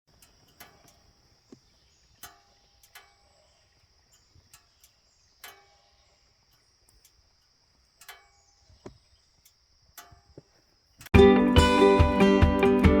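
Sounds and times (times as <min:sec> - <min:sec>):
faint sharp ticks: 0:00.1 - 0:03.4, 0:04.0 - 0:05.8, 0:06.5 - 0:08.3.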